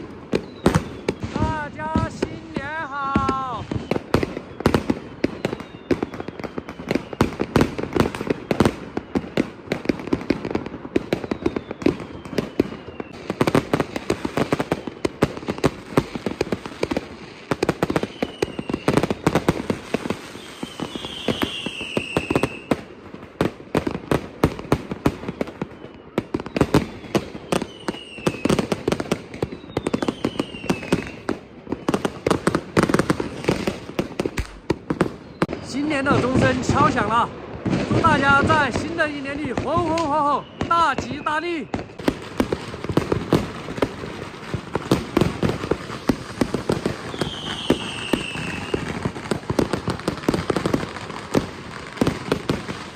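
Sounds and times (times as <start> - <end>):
fireworks bangs and crackling: 0.0 - 52.9
firework whistles falling in pitch: 0.3 - 9.6, 11.1 - 13.4, 17.9 - 22.8, 25.2 - 28.7, 29.3 - 32.0, 39.9 - 42.0, 45.6 - 49.2.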